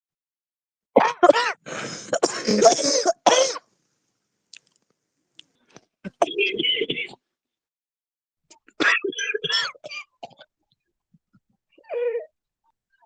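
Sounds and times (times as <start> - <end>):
person coughing: 1.0 - 3.6, 6.1 - 7.2, 8.8 - 10.4
raspy throat-clearing: 1.0 - 3.6, 6.0 - 7.2, 8.5 - 10.5.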